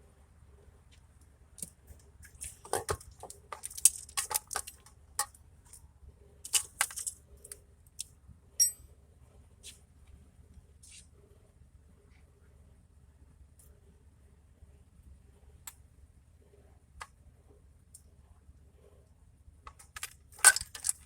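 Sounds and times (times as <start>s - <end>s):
metal parts clicking and rattling: 1.6s - 5.8s, 6.4s - 8.8s, 19.7s - 21.0s
ringing metallic clink: 8.6s - 8.8s.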